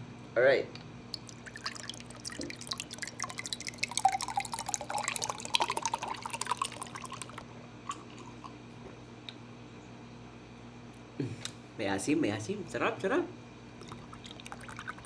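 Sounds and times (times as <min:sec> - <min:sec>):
juice pouring into a glass: 0:01.2 - 0:08.6, 0:13.8 - 0:15.0.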